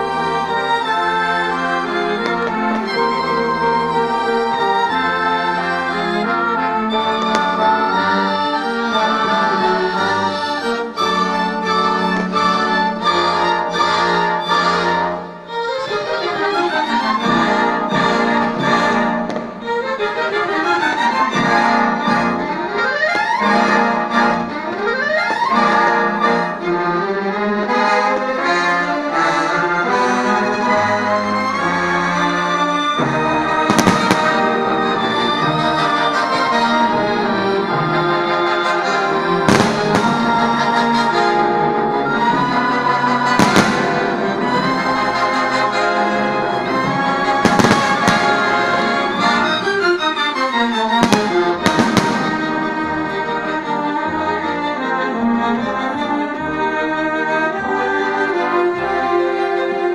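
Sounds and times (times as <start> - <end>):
orchestral music: 0.0 - 59.9
sharp crash: 33.7 - 34.9, 43.4 - 45.2.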